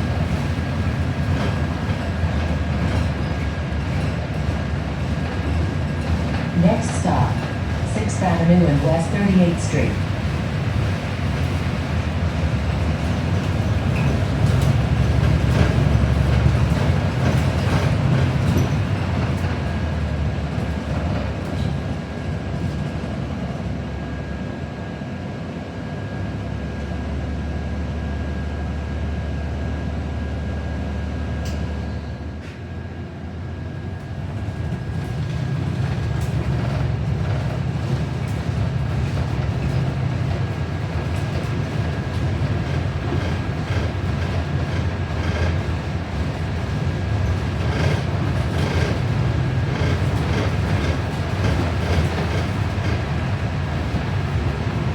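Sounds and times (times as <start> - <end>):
bus engine: 0.0 - 54.9
road rumble: 33.8 - 54.9.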